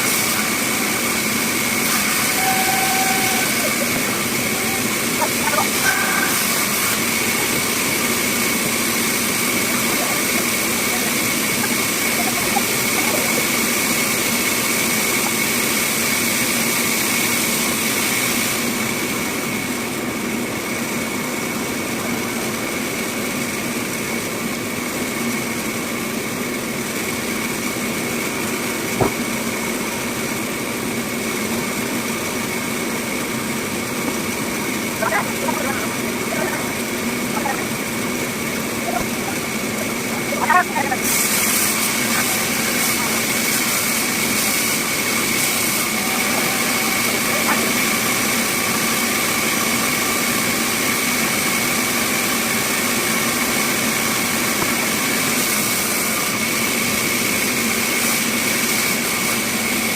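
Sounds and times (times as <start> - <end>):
bandsaw whining: 0.0 - 16.8, 34.6 - 58.3.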